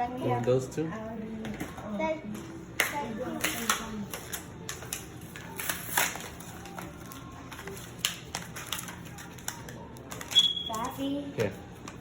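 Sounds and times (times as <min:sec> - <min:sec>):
foil packs crinkling and tapping: 0:02.8 - 0:12.0.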